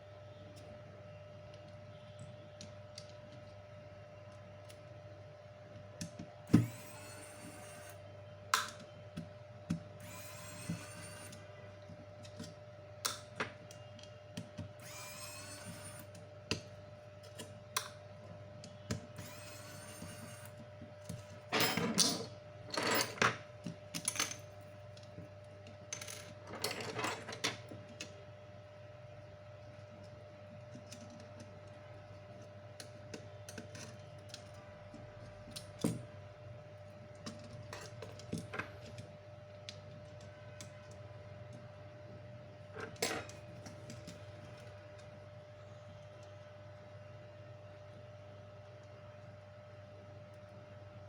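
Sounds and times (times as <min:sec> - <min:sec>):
tool scraping or whirring: 0:06.5 - 0:08.0, 0:10.0 - 0:11.4, 0:14.8 - 0:16.1, 0:19.1 - 0:20.6.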